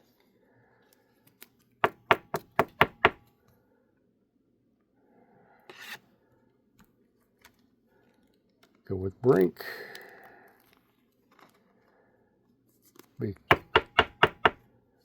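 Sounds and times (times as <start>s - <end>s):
taps on a tabletop: 1.8s - 3.2s, 13.5s - 14.6s.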